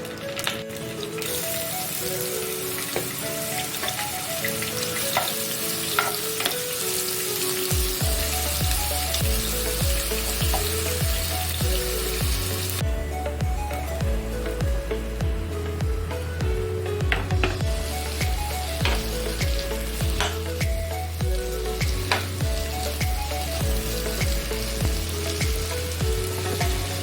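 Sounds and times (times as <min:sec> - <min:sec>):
food sizzling in a pan: 0:00.0 - 0:12.9, 0:17.6 - 0:27.0
background music: 0:00.0 - 0:27.0
spatula tapping: 0:06.0 - 0:06.5
heavy bass beat: 0:07.7 - 0:27.0.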